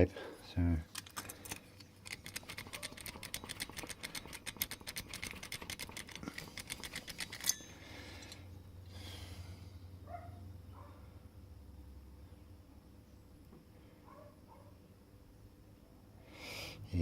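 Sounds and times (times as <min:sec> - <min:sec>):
sharp metallic click: 0:00.9 - 0:08.4
hand file on metal key: 0:01.3 - 0:07.8
faint low hum: 0:07.4 - 0:17.0.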